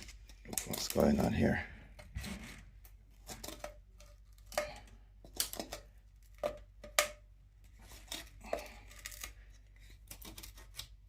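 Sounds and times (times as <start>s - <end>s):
scraping inside drain pipe: 0.0s - 5.0s.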